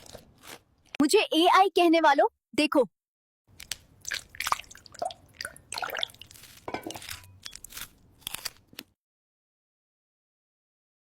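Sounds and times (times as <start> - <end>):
crunching and chewing: 0.0 - 1.0, 5.8 - 9.0
wet squishing and dripping: 3.5 - 7.7.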